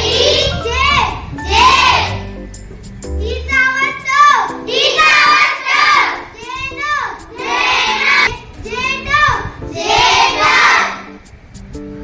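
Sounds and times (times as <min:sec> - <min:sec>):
children chanting in chorus: 0:00.0 - 0:02.2, 0:03.8 - 0:11.1
soft background music: 0:00.0 - 0:12.0.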